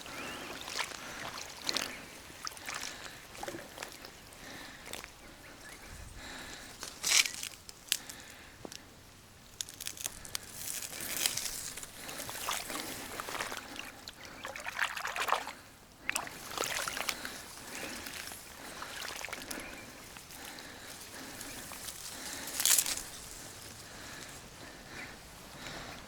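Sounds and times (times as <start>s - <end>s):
small splashes: 0.0s - 5.4s, 10.0s - 23.1s
water sloshing around wading person: 0.0s - 6.4s, 10.0s - 26.0s.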